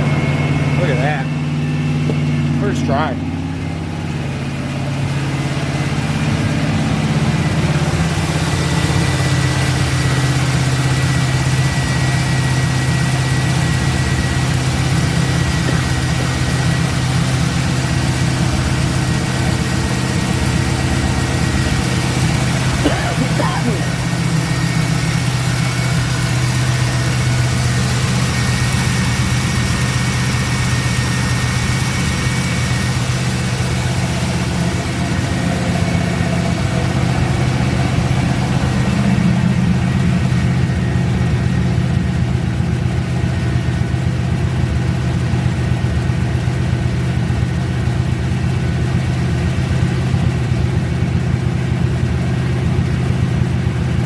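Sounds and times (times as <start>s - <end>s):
car engine idling: 0.0s - 54.0s.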